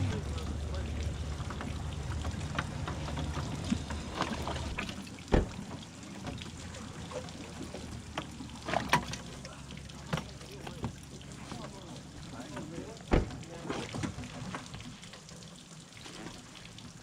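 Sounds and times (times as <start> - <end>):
water trickling and splashing: 0.0 - 17.0
clicks and knocks on boat: 0.9 - 6.5, 7.1 - 9.4, 10.0 - 11.7.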